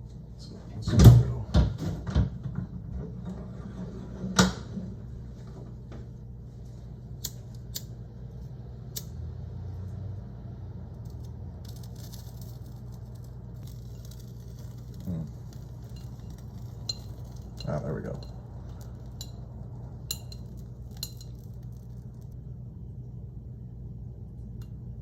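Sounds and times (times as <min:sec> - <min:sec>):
low hum: 0:00.0 - 0:25.0
lighter clicks: 0:07.2 - 0:08.0, 0:08.9 - 0:09.2.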